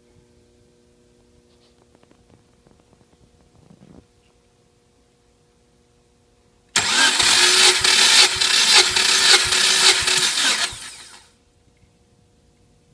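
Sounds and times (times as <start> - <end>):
starter motor cranking engine: 6.8 - 11.2.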